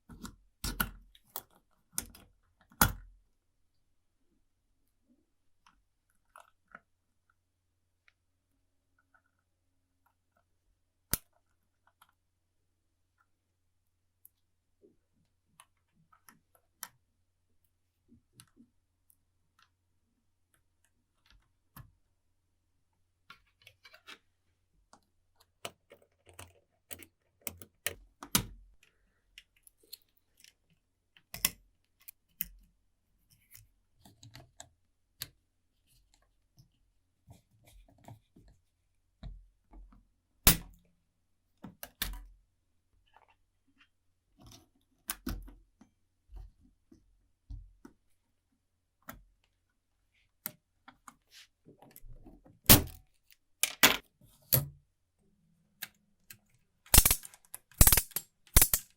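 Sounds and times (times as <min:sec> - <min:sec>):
small metal parts clicking: 0:56.9 - 0:58.9.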